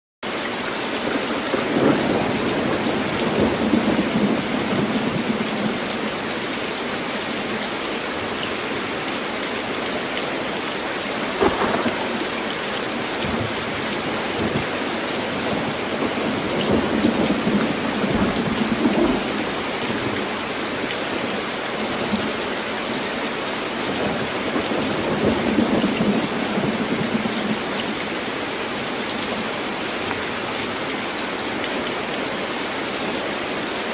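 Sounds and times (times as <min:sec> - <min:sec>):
heavy rain on a tin roof: 0:00.2 - 0:33.9
rolling thunder rumbles: 0:01.1 - 0:06.2, 0:11.3 - 0:20.4, 0:23.9 - 0:27.7
sharp thunder crack: 0:11.4 - 0:12.3.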